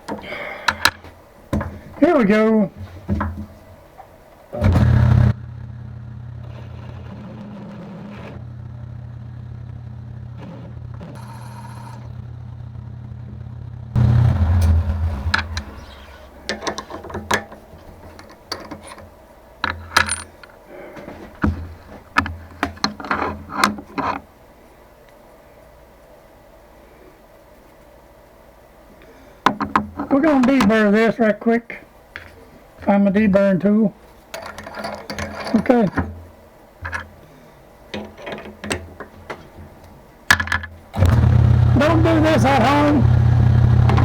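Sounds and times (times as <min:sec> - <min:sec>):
metallic clicks and knocks: 0:00.0 - 0:02.0, 0:14.6 - 0:20.6, 0:21.3 - 0:24.2, 0:34.3 - 0:37.2, 0:37.9 - 0:40.8
milling machine motor hum: 0:02.8 - 0:19.0, 0:41.0 - 0:44.0
milling cutter bursting into steel: 0:14.0 - 0:19.1.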